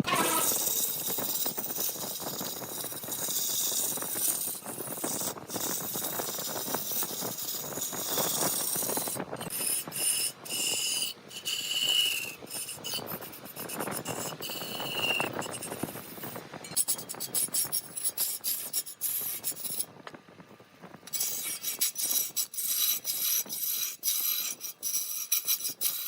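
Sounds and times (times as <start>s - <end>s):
lathe tool scraping wood: 0.0s - 19.8s, 21.1s - 26.0s
thin high squeal: 0.0s - 19.8s.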